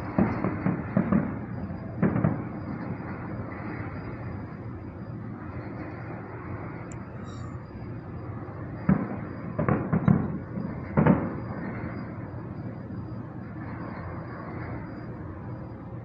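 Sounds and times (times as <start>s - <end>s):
fireworks bangs: 0.0s - 3.2s, 8.8s - 11.8s
steady background noise: 0.0s - 16.0s.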